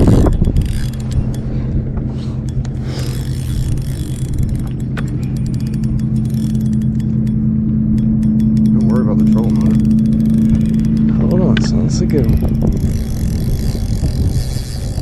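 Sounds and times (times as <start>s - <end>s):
boat motor humming: 0.0s - 15.0s.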